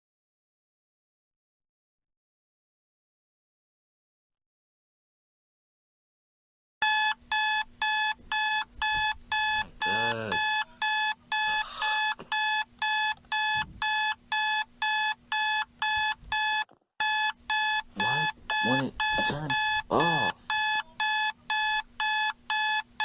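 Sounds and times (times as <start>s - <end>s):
alarm clock beeping: 6.8s - 22.9s.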